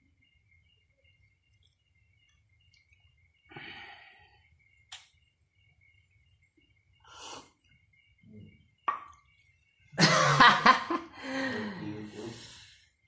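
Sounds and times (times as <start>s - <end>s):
person breathing: 3.4s - 4.6s, 11.1s - 13.0s
sharp click: 4.9s - 5.1s
loud cough: 10.0s - 10.7s.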